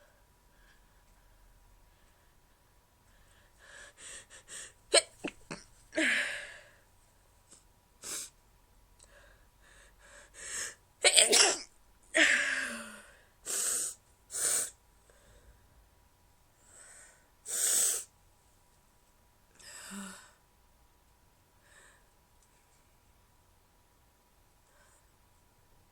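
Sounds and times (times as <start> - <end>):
person stifling sneezes: 4.9 - 6.2, 11.0 - 12.8.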